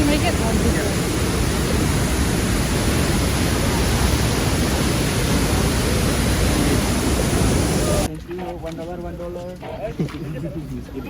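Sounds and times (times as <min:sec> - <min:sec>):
waterfall roaring: 0:00.0 - 0:08.1.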